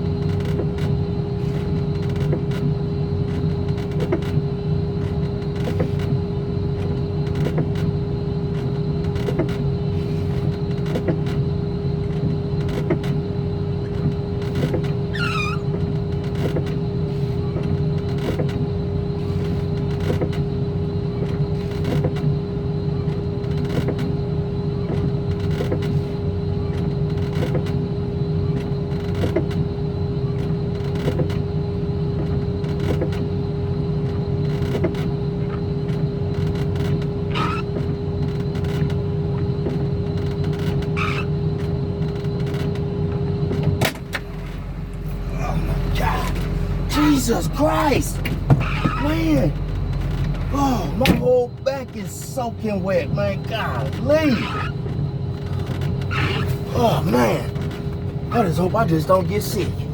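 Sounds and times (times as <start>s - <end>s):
engine humming: 43.8s - 55.0s.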